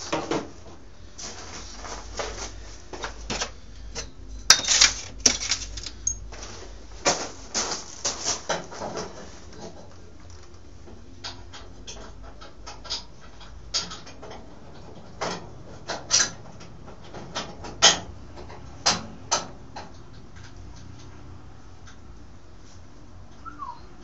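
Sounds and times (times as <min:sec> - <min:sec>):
low steady hum: 0:00.0 - 0:24.0
metal parts clicking and knocking: 0:04.0 - 0:06.2.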